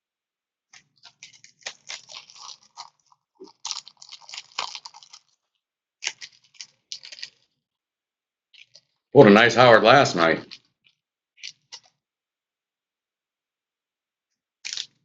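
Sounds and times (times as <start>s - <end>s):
plastic packaging crinkling: 1.0s - 5.4s, 6.0s - 7.4s.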